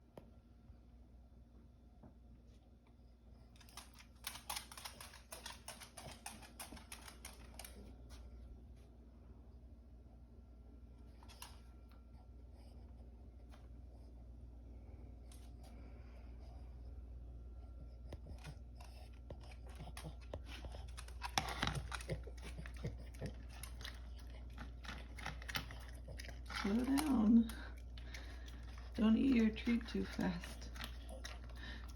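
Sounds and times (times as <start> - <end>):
dog chewing and eating: 3.3 - 8.2, 17.8 - 31.9.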